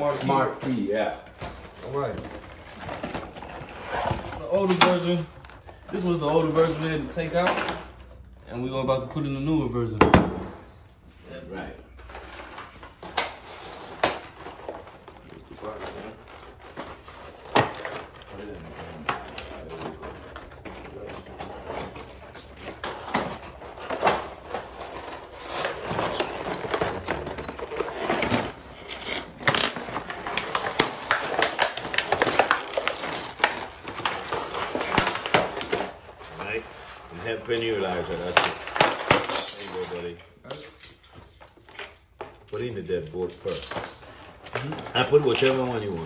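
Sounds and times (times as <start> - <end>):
metal lock parts clicking and clinking: 39.1 - 45.7.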